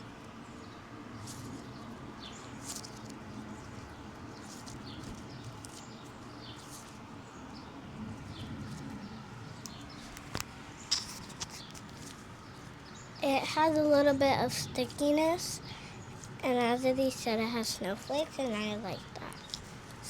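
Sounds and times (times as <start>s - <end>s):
foam toy crackling and squeaking: 2.6s - 7.0s, 10.1s - 20.0s.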